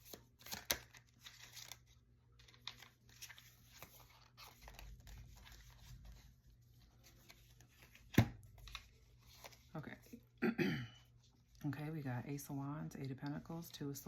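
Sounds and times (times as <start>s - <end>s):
cards being shuffled: 0.0s - 9.7s.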